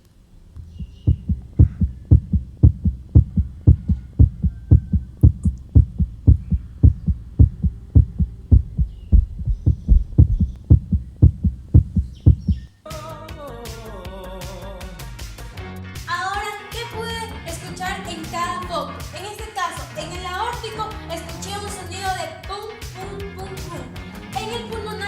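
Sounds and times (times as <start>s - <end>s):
heartbeat thumps: 0.4s - 12.7s.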